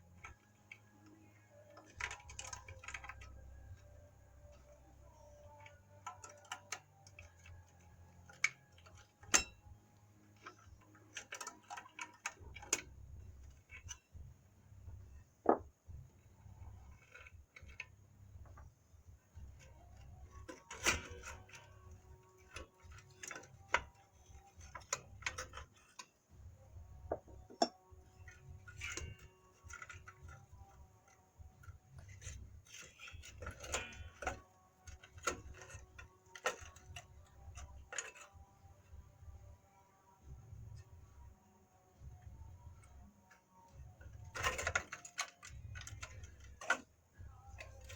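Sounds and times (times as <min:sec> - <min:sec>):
metal tools and parts clanking: 0:27.1 - 0:38.4.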